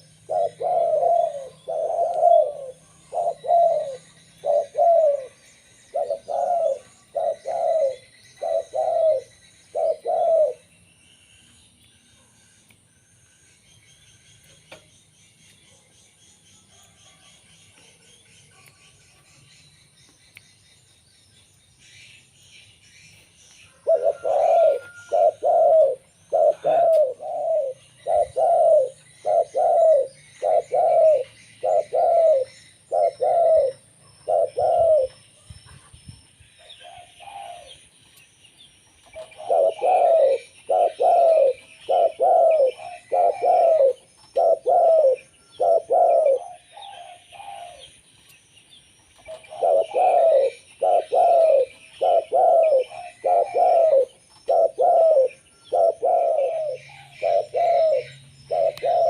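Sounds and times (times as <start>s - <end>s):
dove cooing: 0.0s - 10.7s, 23.7s - 35.2s, 36.6s - 37.8s, 39.1s - 48.0s, 49.2s - 59.0s
faint twittering of small birds: 0.0s - 59.0s.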